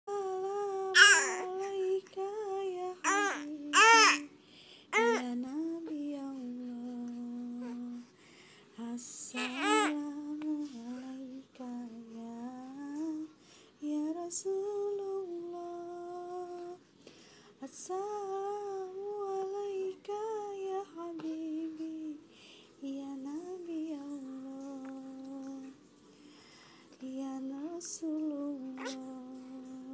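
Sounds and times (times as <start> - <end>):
woman humming: 0.1 - 4.3, 5.0 - 8.1, 28.3 - 29.9
woman humming a lullaby: 0.1 - 4.3, 5.0 - 8.1, 8.8 - 16.8, 17.6 - 22.2, 22.8 - 25.8, 27.0 - 29.9
infant crying: 1.0 - 1.5, 3.0 - 4.2.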